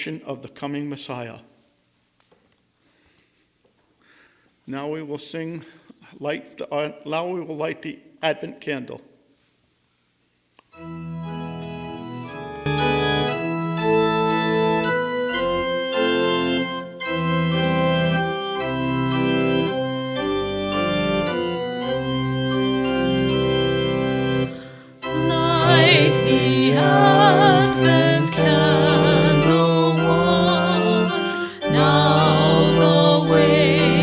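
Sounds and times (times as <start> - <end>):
organ playing sustained chords: 10.8 - 34.0.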